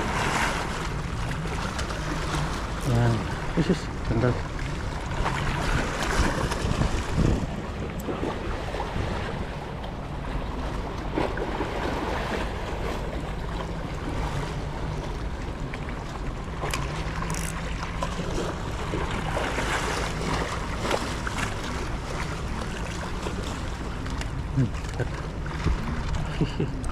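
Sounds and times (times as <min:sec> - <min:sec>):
low engine hum: 0:00.0 - 0:26.9
moving water: 0:00.0 - 0:26.9
wind on microphone: 0:05.6 - 0:09.5.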